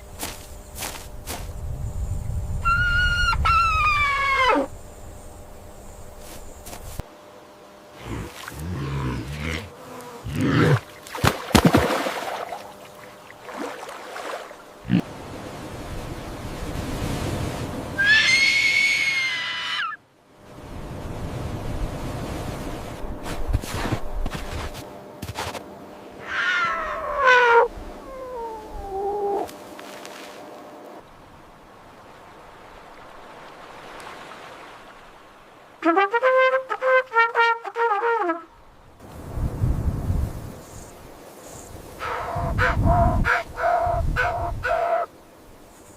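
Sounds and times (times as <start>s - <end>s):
animal's long high call: 2.6s - 4.7s, 18.0s - 20.0s, 26.2s - 29.5s, 42.0s - 45.1s.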